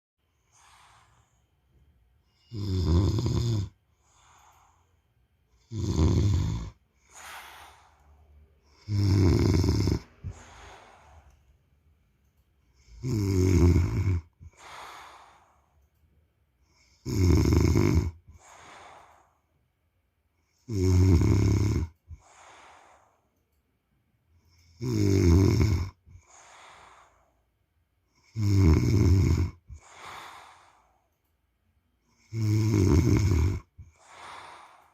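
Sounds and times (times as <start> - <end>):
soft breath: 0.3 - 2.6, 3.8 - 5.3, 6.7 - 8.8, 9.4 - 13.0, 13.8 - 16.0, 18.2 - 19.8, 21.9 - 23.6, 25.9 - 27.6, 29.5 - 32.0, 33.6 - 34.9
man snoring: 2.3 - 4.7, 5.6 - 8.0, 8.6 - 11.2, 12.8 - 15.7, 16.7 - 19.2, 20.5 - 23.1, 24.6 - 27.3, 28.1 - 31.0, 32.1 - 34.9.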